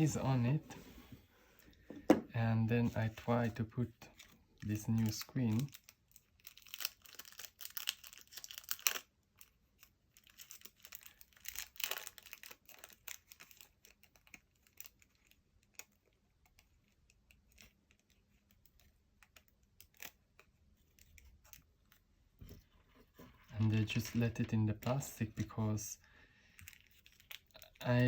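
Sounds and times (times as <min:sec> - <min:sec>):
plastic wrapping crinkling: 0:04.0 - 0:15.9, 0:26.5 - 0:27.9.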